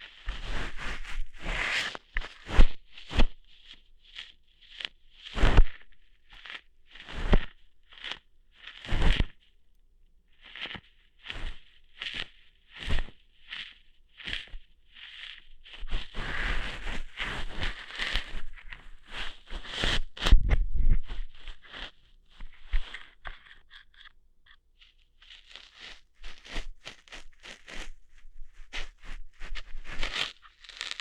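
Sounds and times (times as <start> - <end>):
scratchy rustling: 0.0 - 9.4, 10.4 - 31.0
ear hair plucking pulls: 10.7 - 31.0.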